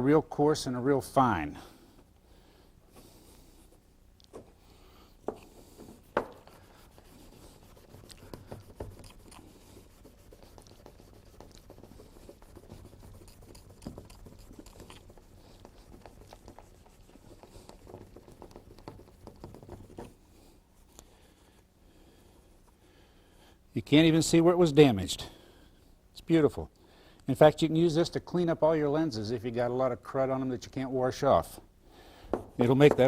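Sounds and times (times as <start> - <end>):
hand rubbing on plastic lens: 5.2 - 21.7.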